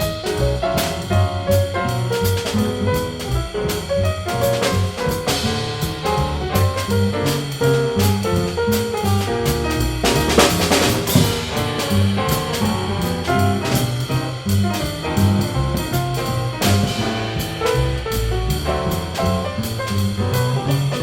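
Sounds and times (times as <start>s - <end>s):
double bass line: 0.0s - 21.0s
drum kit with cymbals: 0.0s - 21.0s
jazz melody line: 0.0s - 21.0s.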